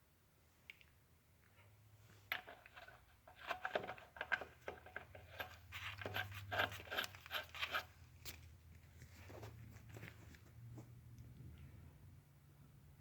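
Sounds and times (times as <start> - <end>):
lug nut spinning on thread: 2.3 - 8.0.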